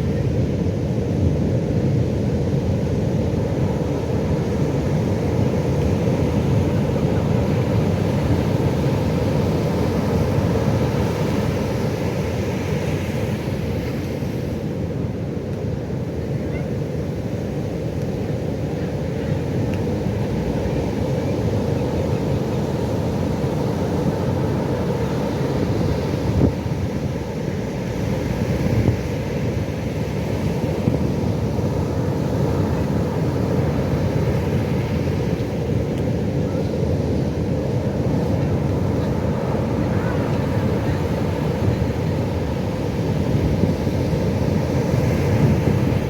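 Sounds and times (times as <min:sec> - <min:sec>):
waves breaking: 0:17.4 - 0:46.0.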